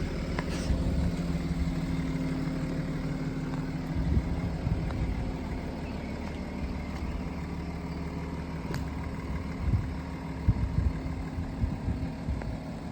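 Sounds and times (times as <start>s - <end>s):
diesel engine idling: 0.0s - 12.9s.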